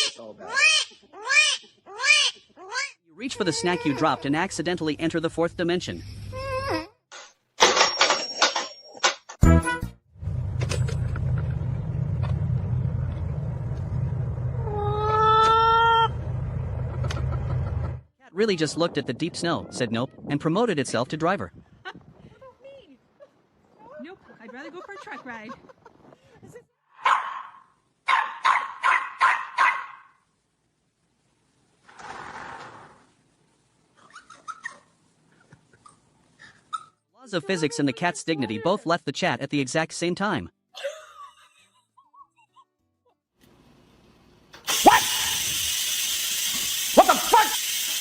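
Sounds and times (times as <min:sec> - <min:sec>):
low rumble: 0:10.2 - 0:18.0
dog barking: 0:27.0 - 0:30.2, 0:44.7 - 0:45.4, 0:47.0 - 0:47.6.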